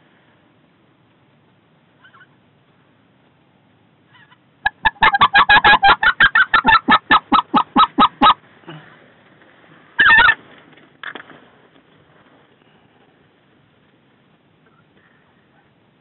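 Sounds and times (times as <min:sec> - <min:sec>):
goose call yelps: 0:04.1 - 0:08.4, 0:10.0 - 0:10.4.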